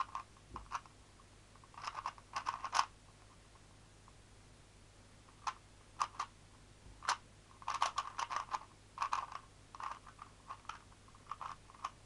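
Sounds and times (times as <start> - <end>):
plastic puzzle cube clicking: 0.0 - 0.9, 1.6 - 2.9, 5.4 - 6.3, 7.0 - 12.0.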